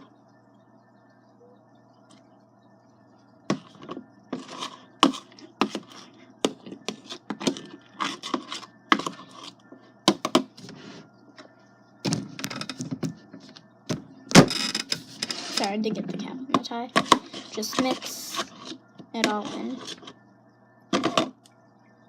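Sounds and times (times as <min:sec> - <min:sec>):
utensil scraping a bowl: 0:03.6 - 0:09.6, 0:17.0 - 0:20.2.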